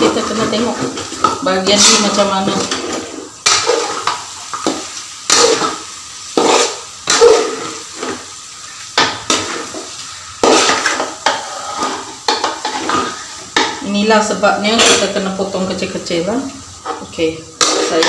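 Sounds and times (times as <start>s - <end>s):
utensil scraping pot: 0.0s - 8.3s, 9.0s - 13.8s, 16.8s - 18.0s
chicken sizzling in oil: 0.0s - 18.0s.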